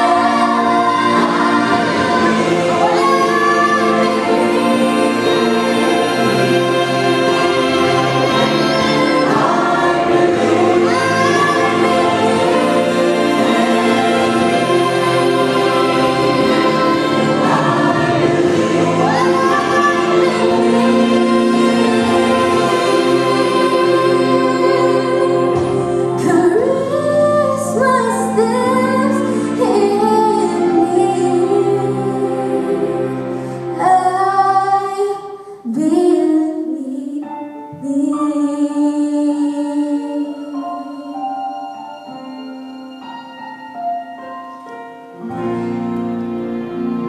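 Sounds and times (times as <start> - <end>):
sustained instrumental chords: 0.0 - 35.0, 38.1 - 47.0
choir singing gospel: 0.0 - 35.8.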